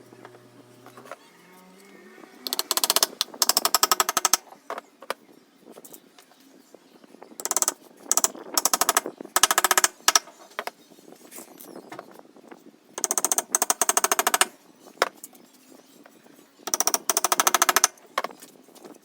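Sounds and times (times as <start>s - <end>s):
hammering power tool bursts: 2.4s - 4.4s.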